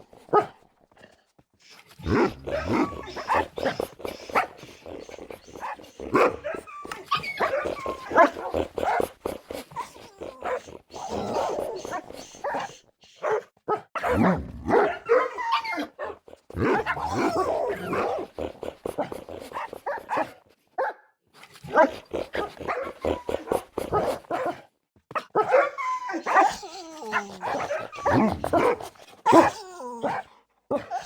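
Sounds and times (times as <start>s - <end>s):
dogs barking and yipping: 2.1s - 18.2s, 25.1s - 30.2s.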